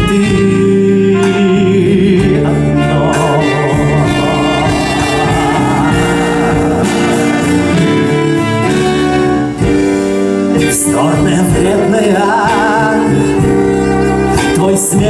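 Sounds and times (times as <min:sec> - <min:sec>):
instrumental music: 0:00.0 - 0:15.0.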